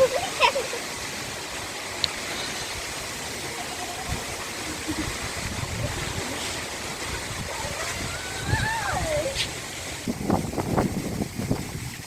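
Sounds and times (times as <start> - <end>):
flowing water rushing: 0.0 - 12.0.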